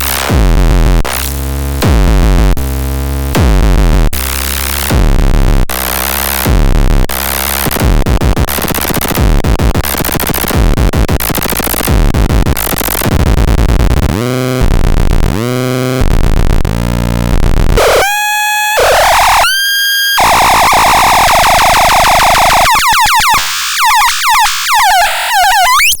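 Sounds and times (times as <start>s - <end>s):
heavy bass: 0.0s - 25.8s
electronic synthesizer music: 17.8s - 26.0s.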